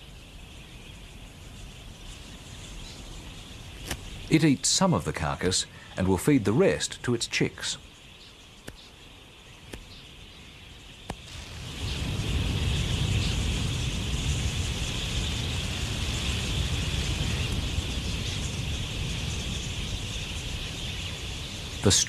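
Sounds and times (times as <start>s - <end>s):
flock of parakeets chattering: 0.5s - 11.2s, 11.9s - 22.0s.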